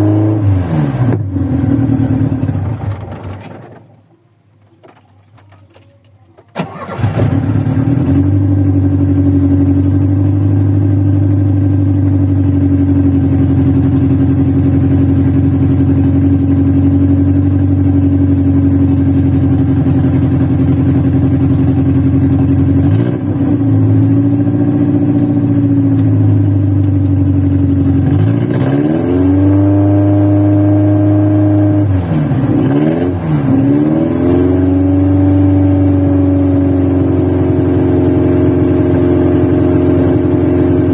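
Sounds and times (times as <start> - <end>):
engine revving: 0.0 - 3.6, 6.6 - 10.0, 19.3 - 40.9
car engine idling roughly: 6.7 - 23.0.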